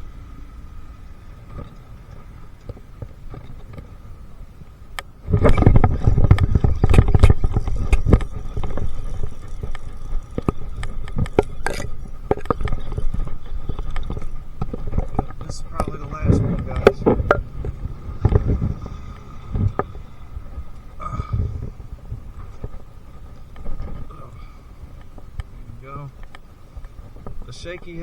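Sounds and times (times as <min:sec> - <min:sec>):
knocks and scrapes in boat: 0:05.2 - 0:18.8.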